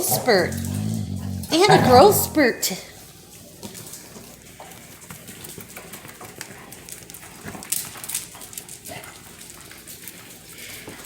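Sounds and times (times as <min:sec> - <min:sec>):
puppies clicking and tapping: 0:03.6 - 0:10.7.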